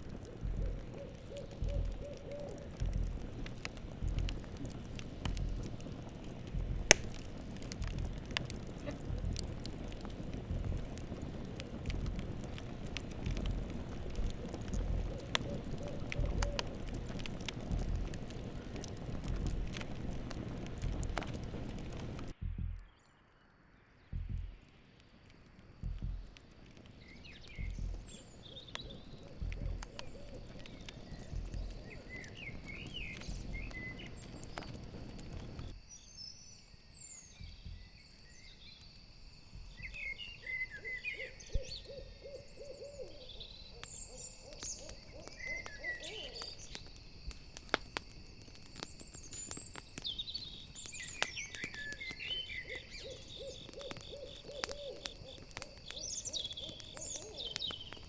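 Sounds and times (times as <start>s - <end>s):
owl hooting: 0.0s - 3.4s, 14.0s - 18.1s, 27.6s - 34.2s, 40.0s - 46.9s, 51.4s - 58.0s
crickets chirping: 0.0s - 22.3s, 22.9s - 58.0s
campfire crackling and popping: 0.0s - 58.0s.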